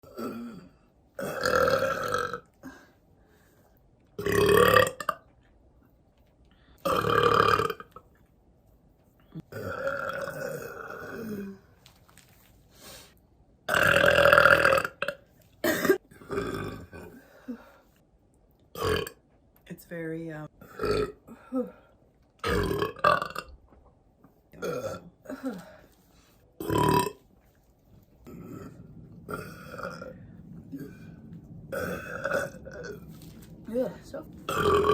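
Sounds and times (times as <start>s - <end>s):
woman burping loudly: 0.0s - 2.8s, 4.2s - 5.3s, 6.8s - 8.0s, 9.4s - 11.6s, 13.7s - 17.7s, 18.8s - 19.2s, 20.6s - 21.8s, 22.4s - 23.6s, 24.6s - 25.8s, 26.6s - 27.2s, 31.7s - 33.0s, 34.5s - 34.9s
women burping: 0.0s - 2.8s, 9.4s - 11.6s, 15.6s - 17.7s, 24.6s - 25.8s.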